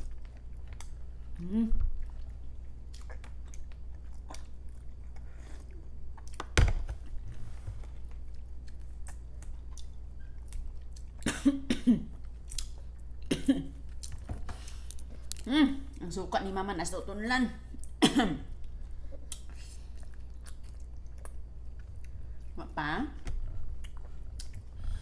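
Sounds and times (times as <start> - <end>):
close-up chewing with mouth clicks: 0.0 - 7.1, 7.9 - 11.2, 12.1 - 15.5, 18.6 - 22.5, 23.4 - 24.9
person coughing: 11.2 - 12.1, 13.3 - 13.8, 18.0 - 18.5.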